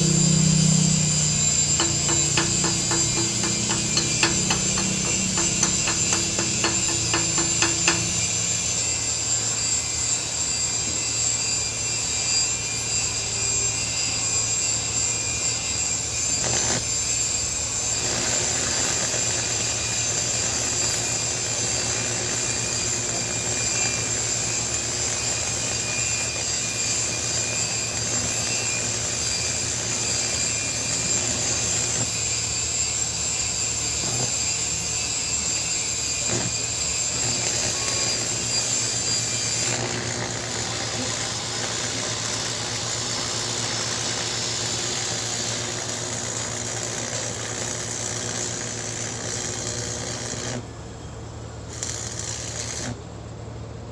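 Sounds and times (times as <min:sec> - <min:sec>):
welding arc hissing: 0:00.0 - 0:10.8, 0:15.8 - 0:50.6, 0:51.7 - 0:52.9.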